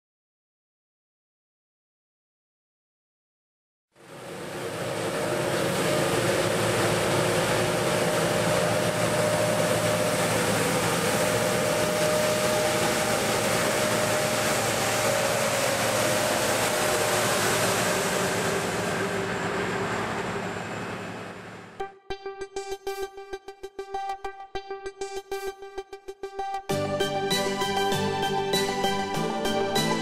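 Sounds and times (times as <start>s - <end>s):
road sweeper and milling machine: 4.0s - 21.8s, 26.7s - 30.0s.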